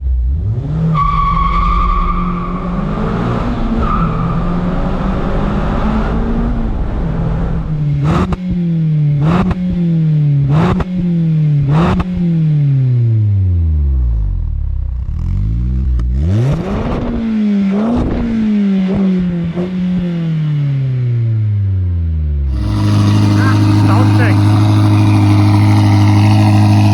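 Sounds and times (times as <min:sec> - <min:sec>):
sports car engine downshifting: 0:00.1 - 0:21.4, 0:22.4 - 0:26.9
exhaust crack: 0:22.5 - 0:26.9.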